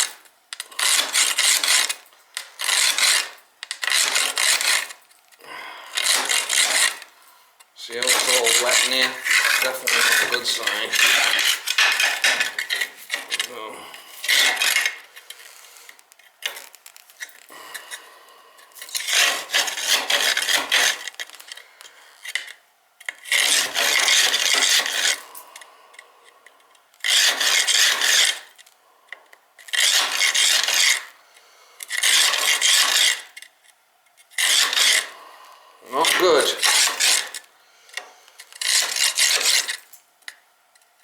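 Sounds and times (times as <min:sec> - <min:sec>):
flue brush rasping: 0:00.6 - 0:05.0, 0:05.9 - 0:07.2, 0:07.9 - 0:16.0, 0:18.9 - 0:21.5, 0:34.4 - 0:35.2, 0:35.9 - 0:37.5.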